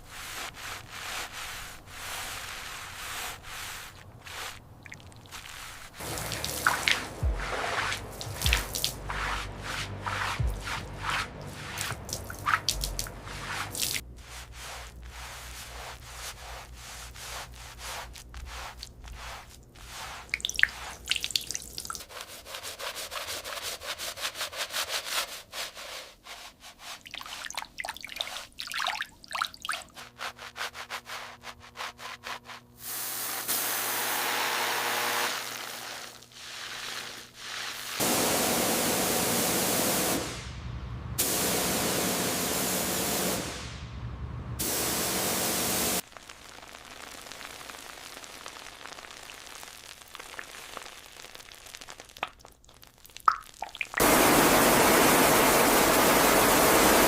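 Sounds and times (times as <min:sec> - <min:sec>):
scrubbing strokes on surface: 0:00.0 - 0:32.9, 0:35.2 - 0:38.8
hissing spray bursts: 0:05.3 - 0:21.4, 0:32.7 - 0:40.6, 0:41.2 - 0:43.8, 0:44.6 - 0:46.1, 0:54.0 - 0:57.0.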